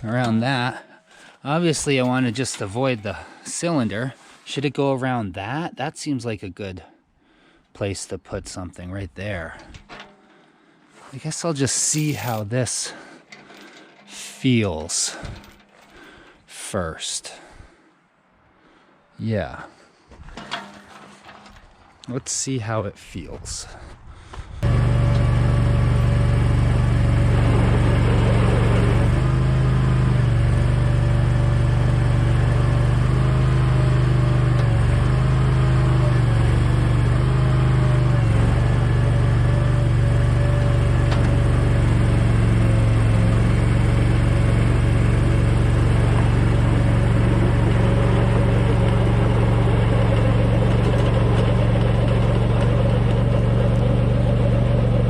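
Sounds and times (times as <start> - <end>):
engine running under throttle: 24.6 - 55.0.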